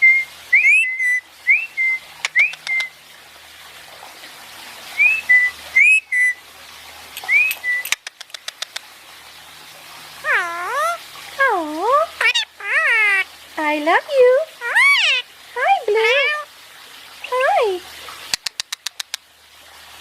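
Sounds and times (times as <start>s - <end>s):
parakeet whistling: 0.0s - 2.9s, 5.0s - 6.4s, 7.2s - 8.0s, 10.2s - 11.0s, 12.2s - 13.2s, 14.6s - 15.2s
short wavering bird call: 0.0s - 3.0s, 5.0s - 6.4s, 7.2s - 8.0s
sharp clicks: 7.2s - 8.9s, 18.3s - 19.2s.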